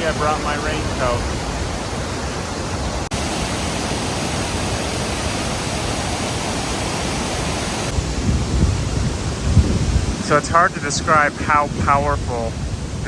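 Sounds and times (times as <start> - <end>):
rush of falling water: 0.0 - 13.0.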